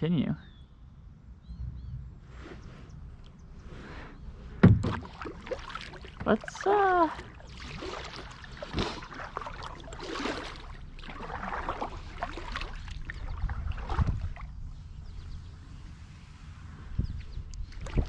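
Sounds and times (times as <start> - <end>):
low rumble: 0.8 - 18.0
dull thump: 4.5 - 5.3
paddle splashing in water: 4.6 - 14.6, 17.6 - 18.0.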